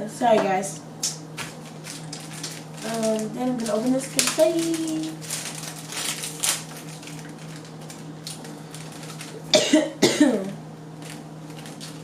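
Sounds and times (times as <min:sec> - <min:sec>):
steady low hum: 0:00.0 - 0:12.0
girl coughing: 0:09.5 - 0:10.6.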